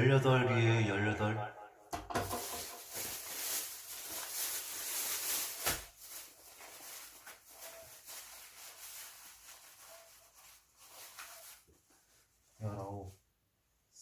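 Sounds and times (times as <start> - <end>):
crackly rustling of pastries: 2.3 - 13.0.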